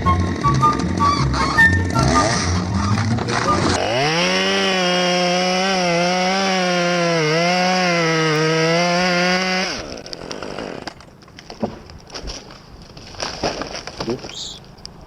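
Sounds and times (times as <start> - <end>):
chainsaw engine revving: 0.0 - 11.0.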